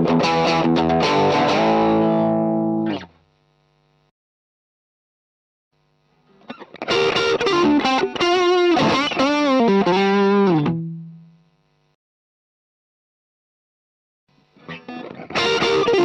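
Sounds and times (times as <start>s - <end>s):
overdriven electric guitar lead: 0.0s - 3.1s, 6.3s - 11.3s, 14.6s - 16.0s.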